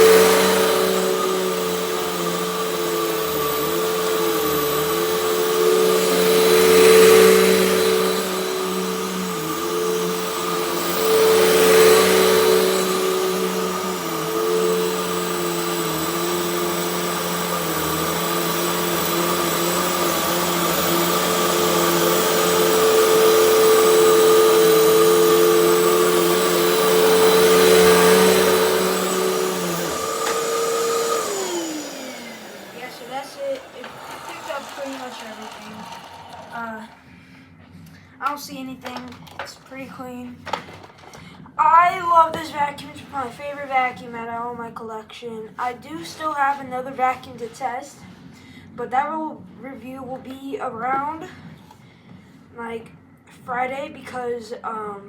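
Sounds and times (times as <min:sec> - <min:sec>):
vacuum motor winding down: 0:00.0 - 0:37.2
vacuum cleaner running: 0:00.0 - 0:39.4.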